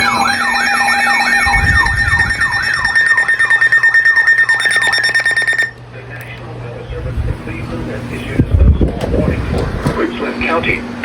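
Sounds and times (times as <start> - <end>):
electronic siren yelping: 0.0 - 5.8.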